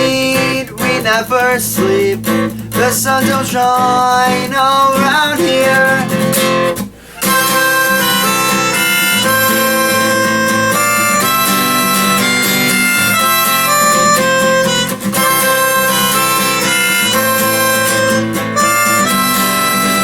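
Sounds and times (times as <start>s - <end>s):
acoustic guitar: 0.0s - 20.0s
harmonica playing lead: 5.7s - 20.0s.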